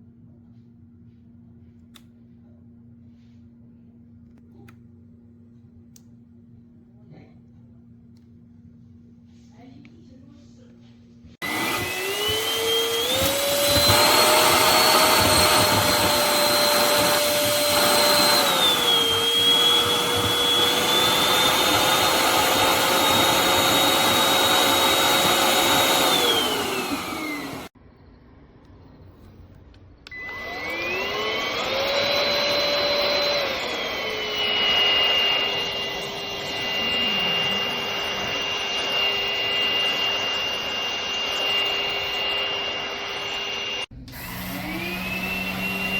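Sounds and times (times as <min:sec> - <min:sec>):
stick vacuum motor whining: 0:11.4 - 0:27.8, 0:30.1 - 0:45.9.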